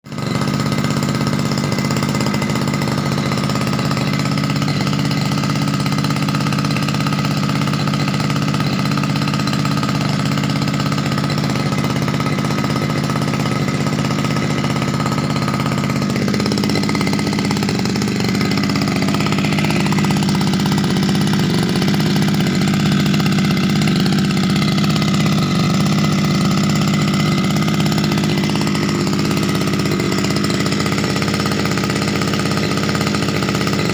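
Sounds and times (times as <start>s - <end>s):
brush cutter engine running: 0.0s - 33.9s.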